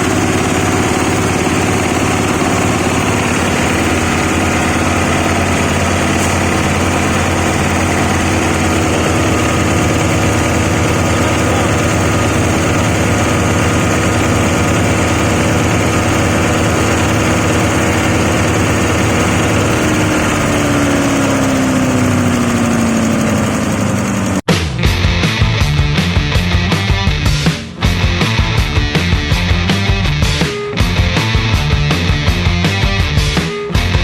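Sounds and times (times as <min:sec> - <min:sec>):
grinding machine humming: 0:00.0 - 0:24.5
rock music with distorted guitar: 0:24.5 - 0:34.0.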